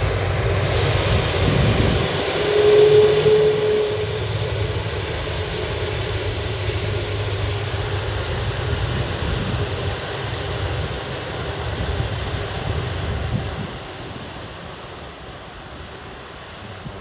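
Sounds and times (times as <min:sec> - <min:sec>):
jet engines at takeoff: 0:00.0 - 0:17.0
faint whining tone: 0:02.4 - 0:09.8.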